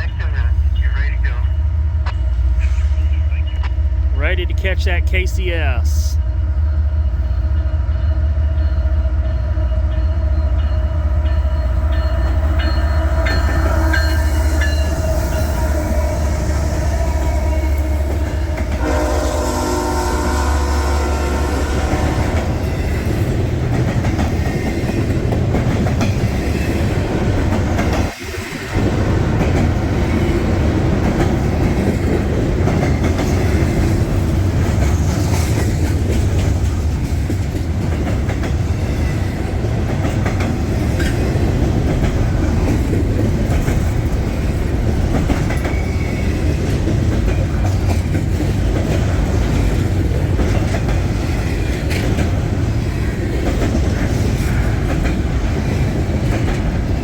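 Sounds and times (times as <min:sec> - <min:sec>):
freight train rumbling past: 0:00.0 - 0:57.0
train horn: 0:12.6 - 0:22.7.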